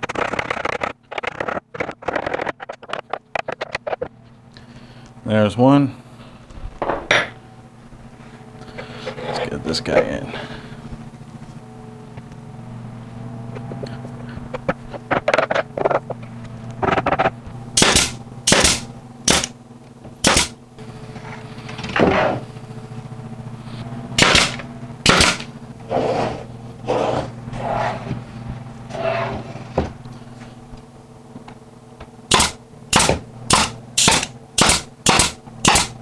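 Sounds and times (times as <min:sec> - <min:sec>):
steady low hum: 0:00.2 - 0:36.0
nail gun firing: 0:17.8 - 0:19.6, 0:20.2 - 0:20.6, 0:24.2 - 0:25.5, 0:32.3 - 0:36.0.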